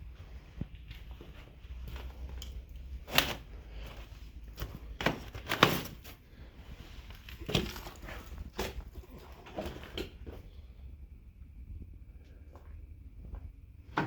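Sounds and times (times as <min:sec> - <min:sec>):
footsteps crunching over debris: 0:00.0 - 0:10.6.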